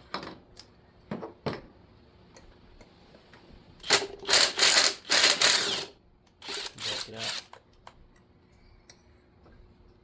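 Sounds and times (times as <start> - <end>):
ratchet wrench strokes: 3.8 - 7.5.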